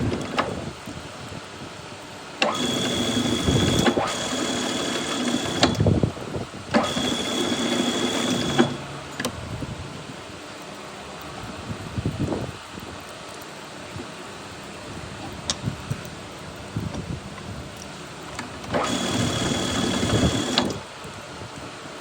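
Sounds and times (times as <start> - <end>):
lathe click: 2.4 - 5.8, 6.7 - 9.4, 18.3 - 20.8
metal lathe whine: 2.4 - 5.9, 6.7 - 9.0, 18.4 - 20.8.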